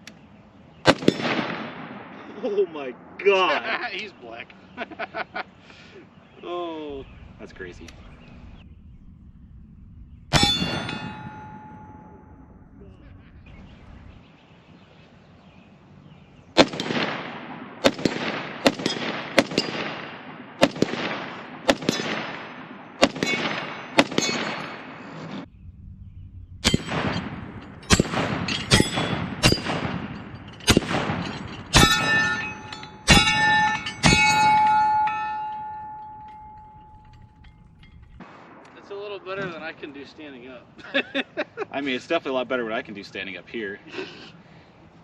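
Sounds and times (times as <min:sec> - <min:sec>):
rifle shots: 0:00.8 - 0:02.3, 0:16.6 - 0:25.5, 0:26.6 - 0:35.8, 0:38.2 - 0:39.7
steel targets ringing: 0:10.3 - 0:12.8, 0:23.0 - 0:25.2, 0:26.6 - 0:38.3.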